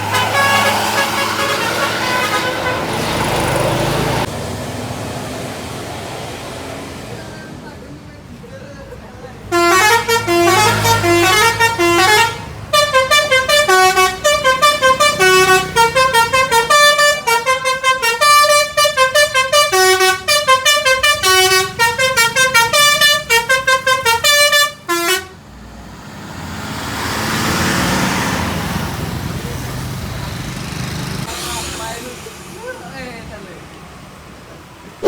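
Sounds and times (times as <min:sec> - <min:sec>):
musical bus horn melody: 0:00.0 - 0:04.3, 0:09.5 - 0:25.4.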